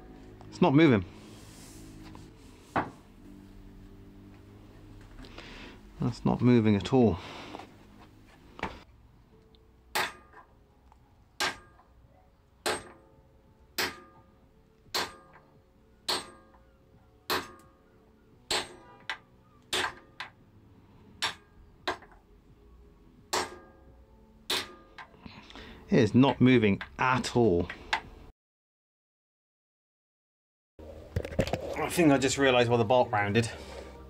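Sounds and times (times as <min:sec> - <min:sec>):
sledgehammer striking steel bolt: 0:09.9 - 0:10.5, 0:11.4 - 0:11.9, 0:12.6 - 0:13.1, 0:13.8 - 0:14.3, 0:14.9 - 0:15.4, 0:16.1 - 0:16.6, 0:17.3 - 0:17.7, 0:18.5 - 0:20.1, 0:23.3 - 0:23.8, 0:24.5 - 0:25.1.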